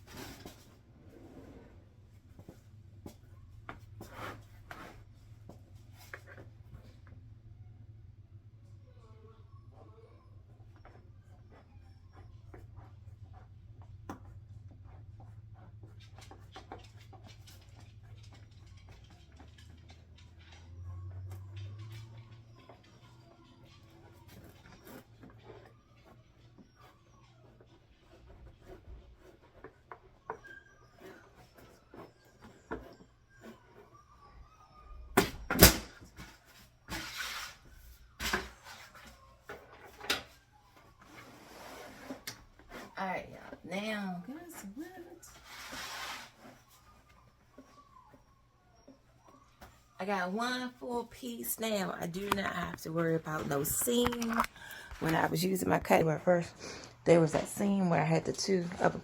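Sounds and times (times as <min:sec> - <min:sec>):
cutting mat scratching: 0:10.7 - 0:35.2, 0:36.1 - 0:50.0
clicks of handling: 0:52.2 - 0:55.3.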